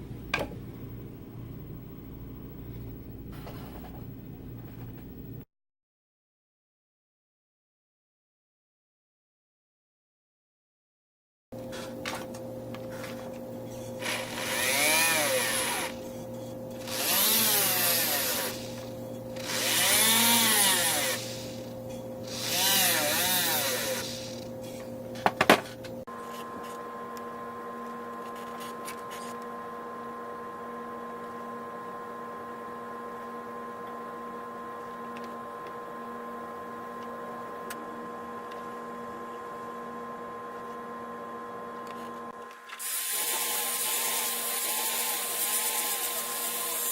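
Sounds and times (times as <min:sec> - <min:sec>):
steady hum: 0:11.6 - 0:42.5
small power tool bursts: 0:14.0 - 0:16.0, 0:16.8 - 0:24.8, 0:42.7 - 0:46.9.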